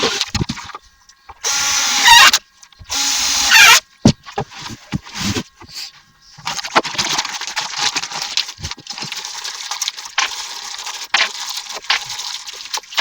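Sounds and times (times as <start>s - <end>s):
rustling handling noise: 4.0s - 13.0s.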